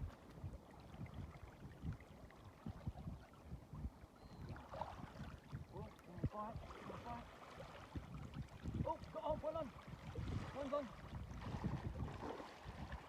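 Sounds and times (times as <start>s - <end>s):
gusty wind on microphone: 0.0s - 13.0s.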